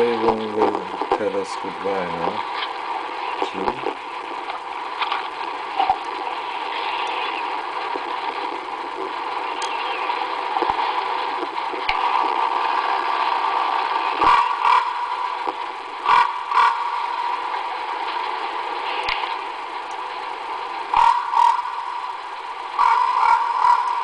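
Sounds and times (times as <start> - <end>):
recording machine hum and hiss: 0.0 - 24.0
raven harsh calls: 12.0 - 15.4, 16.0 - 18.0, 20.9 - 24.0.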